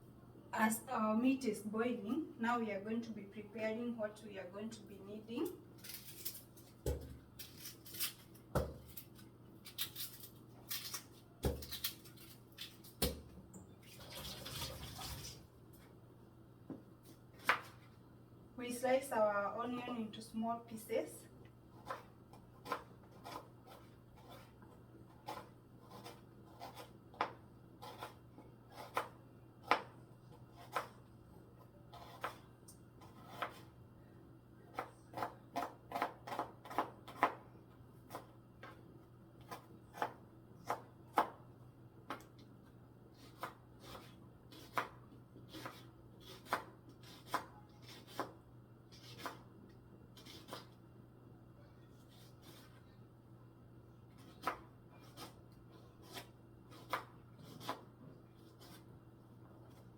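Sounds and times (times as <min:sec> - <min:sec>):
knife slicing onion: 0:05.4 - 0:13.3, 0:17.0 - 0:17.9, 0:21.7 - 0:33.8, 0:34.7 - 0:37.4, 0:38.0 - 0:38.8, 0:39.4 - 0:41.4, 0:43.1 - 0:50.8, 0:52.0 - 0:52.9, 0:54.1 - 0:59.0, 0:59.6 - 0:59.9.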